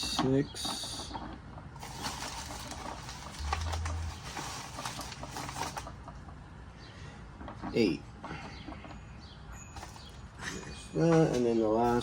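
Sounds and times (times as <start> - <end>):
packaging crinkling: 1.8 - 6.1.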